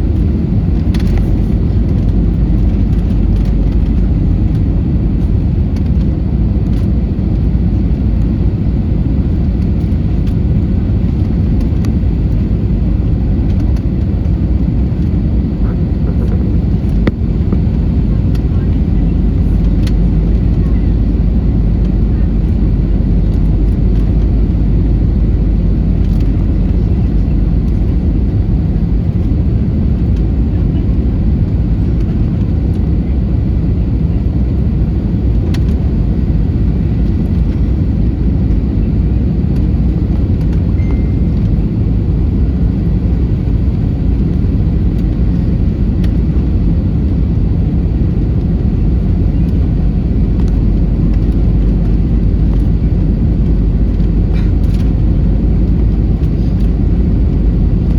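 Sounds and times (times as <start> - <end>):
airliner engines rumbling: 0.0 - 57.9.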